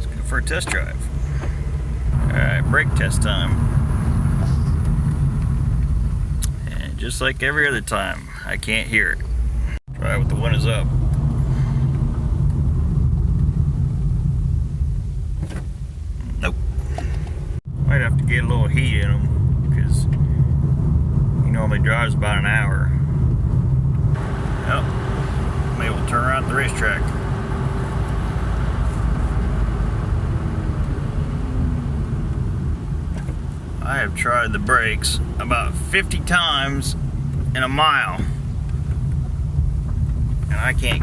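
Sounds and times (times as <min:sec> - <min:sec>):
car engine and tyres rumbling: 0:00.0 - 0:41.0.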